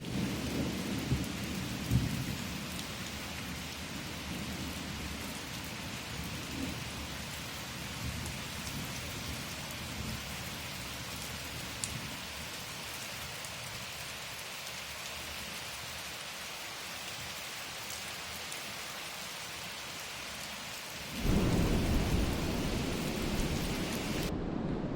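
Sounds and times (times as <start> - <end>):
steady rain falling: 0.0 - 24.9
low rumble of thunder: 0.1 - 2.6, 21.2 - 24.9.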